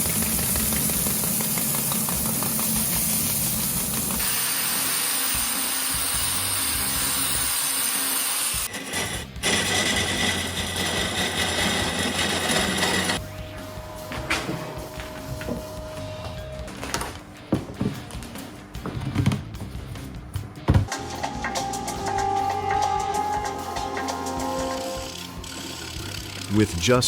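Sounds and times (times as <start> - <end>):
wood lathe cutting wood: 0.0 - 13.2, 20.9 - 26.8.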